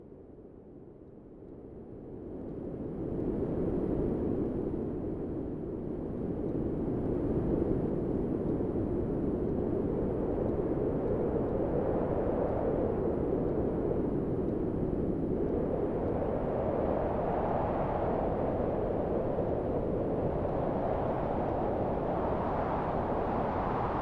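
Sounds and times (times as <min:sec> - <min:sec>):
synthesised wind noise: 0:11.2 - 0:24.0.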